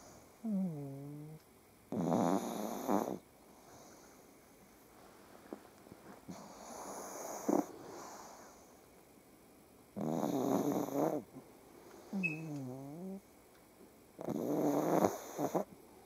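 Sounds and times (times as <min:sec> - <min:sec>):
dog snoring: 0:00.0 - 0:04.1, 0:06.3 - 0:08.7, 0:10.0 - 0:11.3, 0:12.1 - 0:13.2, 0:14.2 - 0:15.7.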